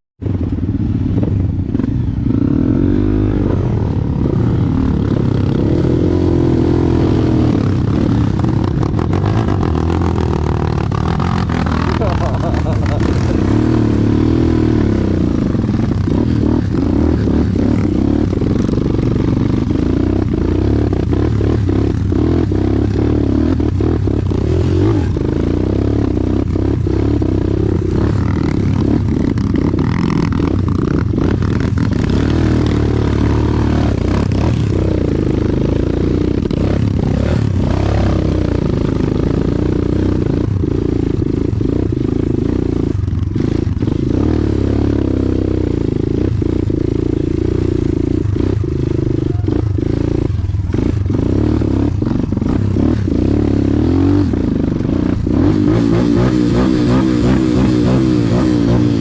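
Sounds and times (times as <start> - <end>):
motorcycle engine running: 0.2 - 59.0.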